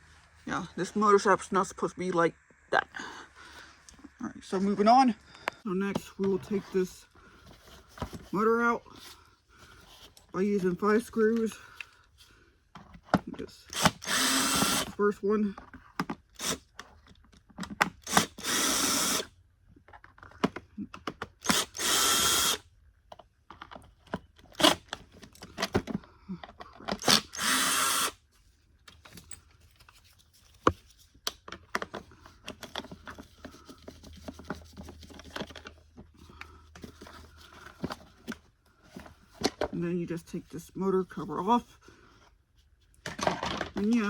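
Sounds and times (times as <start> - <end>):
screws and plastic parts rattling: 12.8 - 22.6, 23.2 - 39.8
power drill-driver running: 13.7 - 15.1, 16.4 - 16.7, 18.0 - 19.3, 21.4 - 22.6, 24.6 - 24.9, 27.0 - 28.2.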